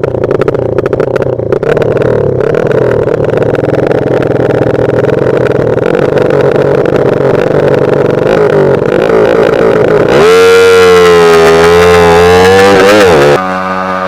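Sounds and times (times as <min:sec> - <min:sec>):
motorcycle engine running loudly: 0:00.0 - 0:14.0.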